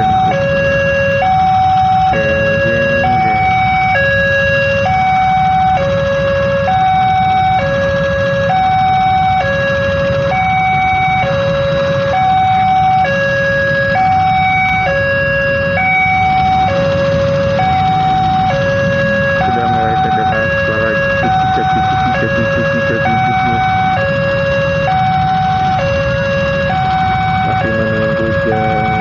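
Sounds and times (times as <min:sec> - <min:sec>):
two-tone warning alarm: 0:00.0 - 0:29.0
steady low rumble: 0:16.4 - 0:25.8, 0:26.8 - 0:29.0.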